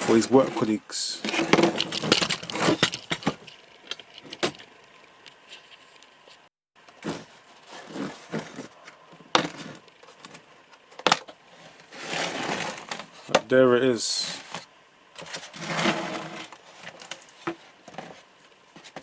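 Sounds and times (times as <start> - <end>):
hands handling packaging: 1.3 - 4.7.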